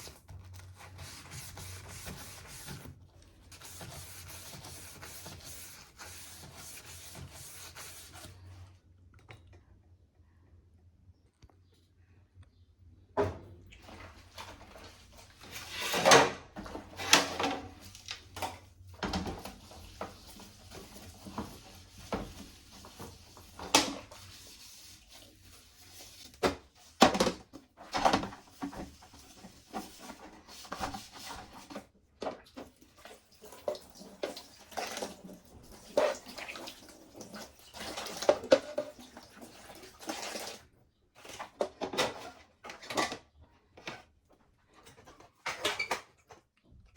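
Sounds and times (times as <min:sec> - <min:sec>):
plastic shelves knocking and clattering: 0:13.2 - 0:20.2, 0:26.4 - 0:32.8, 0:37.9 - 0:39.1, 0:41.2 - 0:46.5.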